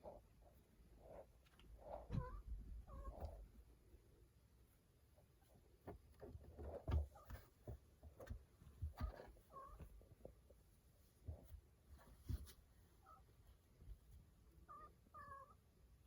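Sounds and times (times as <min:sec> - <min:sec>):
soft thumps and scuffling: 0:05.4 - 0:14.4.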